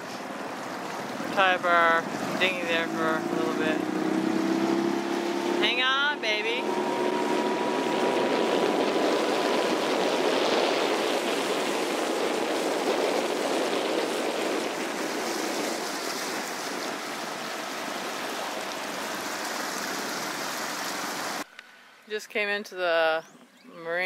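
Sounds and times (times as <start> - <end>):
water rushing past a hull: 0.0 - 21.5.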